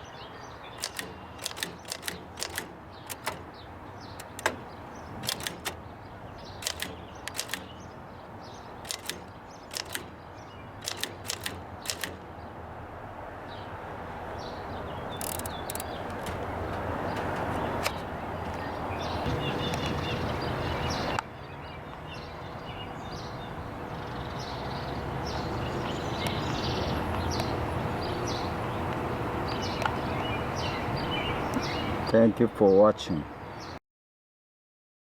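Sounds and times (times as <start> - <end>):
typewriter key strikes: 0.8 - 5.9, 6.6 - 7.9, 8.8 - 10.2, 10.8 - 12.3, 15.2 - 16.6.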